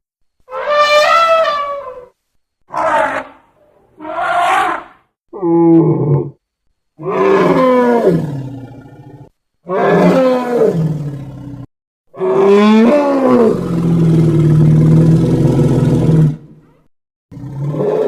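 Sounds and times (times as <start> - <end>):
elephant calls: 0.5 - 5.0.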